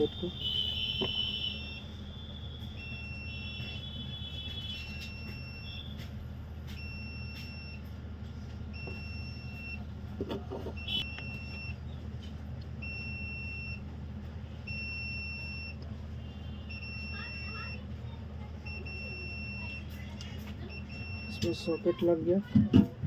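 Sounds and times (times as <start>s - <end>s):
steady low hum: 0.0s - 23.0s
high electronic beep: 20.6s - 22.0s.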